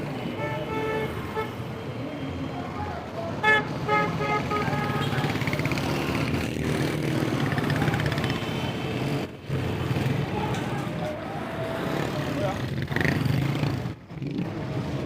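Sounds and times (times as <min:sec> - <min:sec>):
vehicle engines running: 0:04.6 - 0:15.0.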